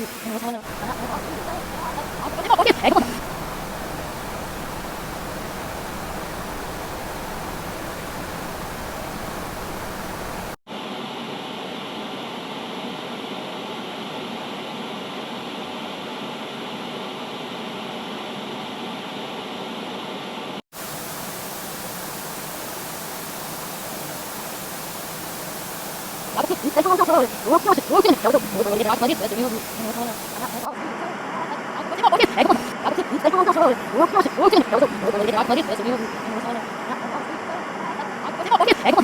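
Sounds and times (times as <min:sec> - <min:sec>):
rushing hiss background noise: 0:00.0 - 0:10.6, 0:20.8 - 0:39.0.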